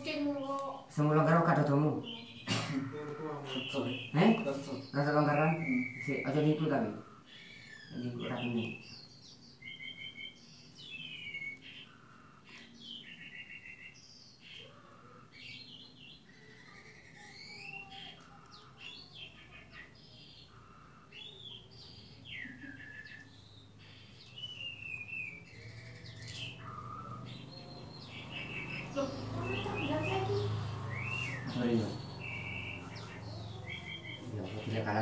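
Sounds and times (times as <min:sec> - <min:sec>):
small birds chirping: 0:00.0 - 0:35.0.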